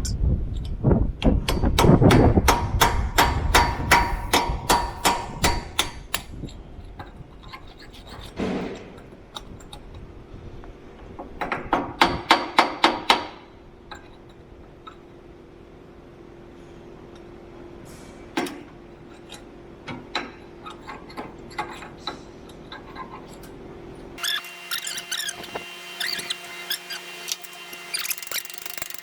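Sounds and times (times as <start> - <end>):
hammer blows on steel: 1.4 - 6.2.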